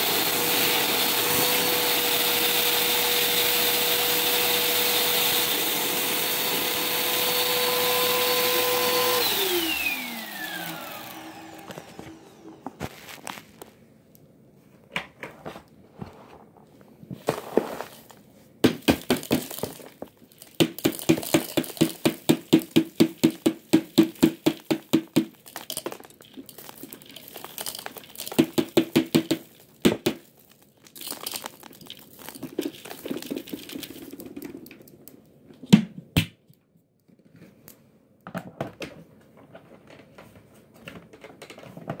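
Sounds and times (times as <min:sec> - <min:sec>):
vacuum cleaner motor whining: 0:00.0 - 0:13.6.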